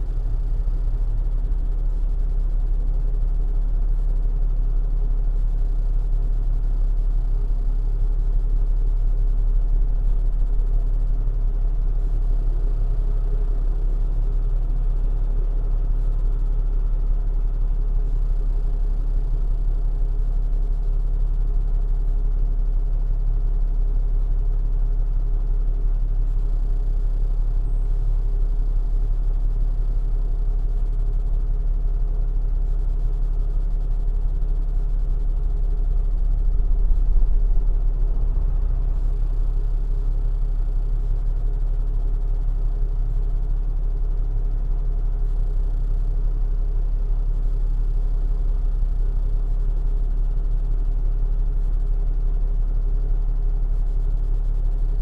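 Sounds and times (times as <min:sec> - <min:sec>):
vehicle road and engine rumble: 0:00.0 - 0:21.4, 0:25.7 - 0:46.1.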